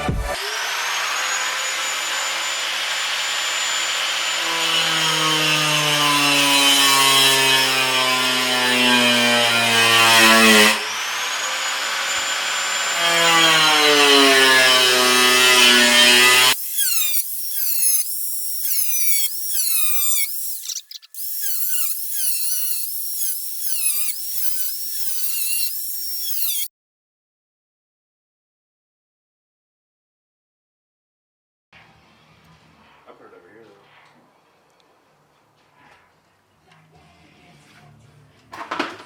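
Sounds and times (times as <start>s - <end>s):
power tool motor whining: 0.0s - 26.7s.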